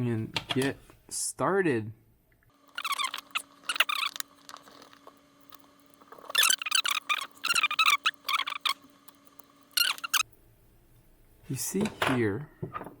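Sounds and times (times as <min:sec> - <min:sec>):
small tools squeaking and scraping: 0:02.6 - 0:10.2.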